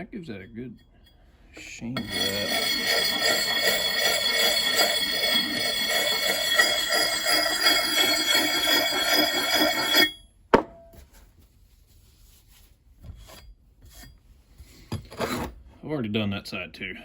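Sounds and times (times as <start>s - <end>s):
sharpening puck on axe head: 2.0s - 10.2s.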